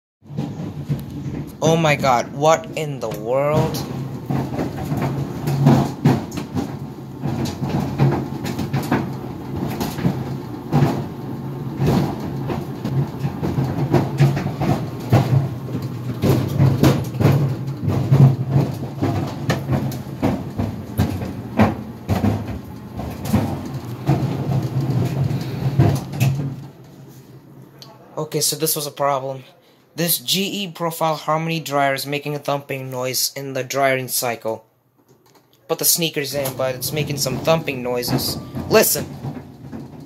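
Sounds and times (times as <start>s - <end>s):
clothes dryer humming: 0.2s - 34.6s, 35.3s - 40.0s
sneakers thumping in dryer: 3.4s - 27.1s.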